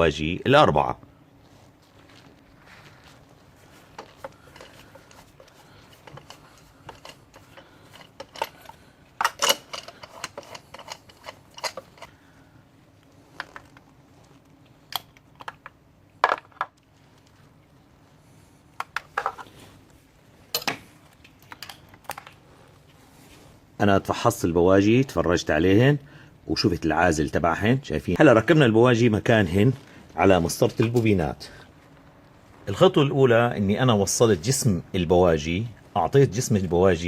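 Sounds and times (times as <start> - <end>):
metallic clicks of hand tools: 4.0 - 12.1.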